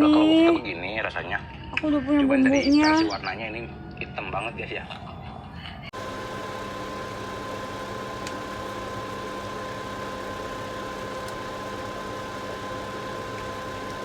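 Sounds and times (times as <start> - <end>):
machine hum with whine: 5.9 - 14.0.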